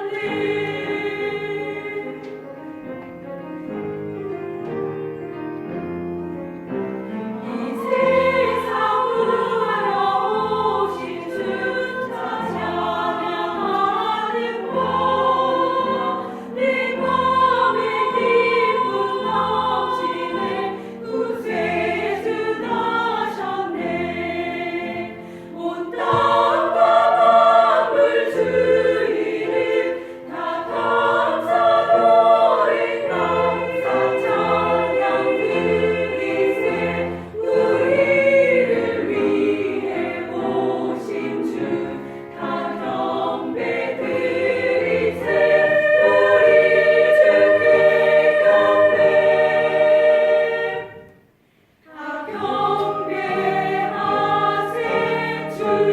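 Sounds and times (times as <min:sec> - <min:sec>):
vocal ensemble singing: 0:00.0 - 0:02.4, 0:07.4 - 0:55.9
singers breathing: 0:20.7 - 0:21.0, 0:25.2 - 0:25.6, 0:51.3 - 0:51.8.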